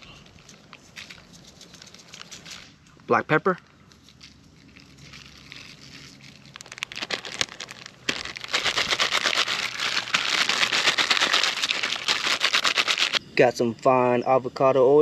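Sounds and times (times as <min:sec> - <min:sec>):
pepper grinder crackling: 0:04.7 - 0:13.2.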